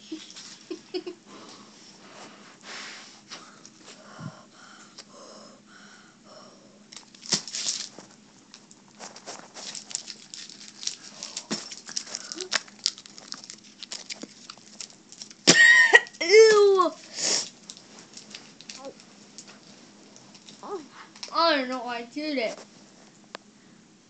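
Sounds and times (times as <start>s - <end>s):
quiet breathing and sniffs: 0.1s - 6.9s, 17.0s - 21.2s.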